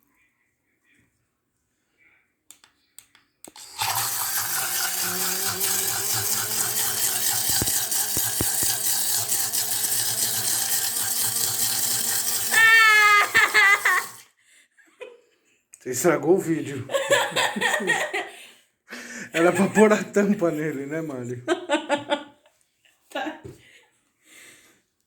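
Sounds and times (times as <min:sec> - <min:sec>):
blender motor whirring water: 0:03.5 - 0:14.2.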